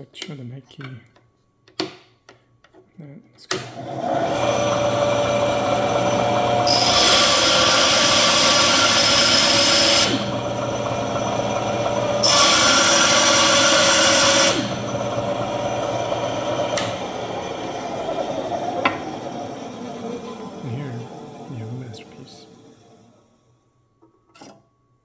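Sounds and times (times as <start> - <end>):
bandsaw cutting wood: 3.5 - 23.1
bandsaw motor hum: 3.5 - 23.3.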